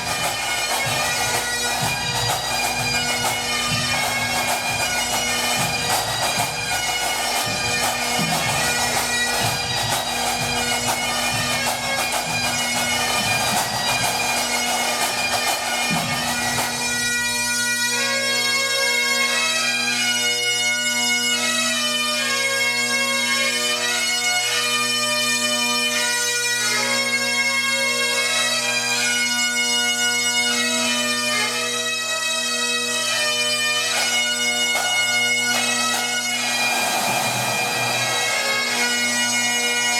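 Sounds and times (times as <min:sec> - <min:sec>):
drums beating: 0:00.0 - 0:17.2, 0:34.0 - 0:39.0
bagpipes playing melody: 0:00.0 - 0:39.9.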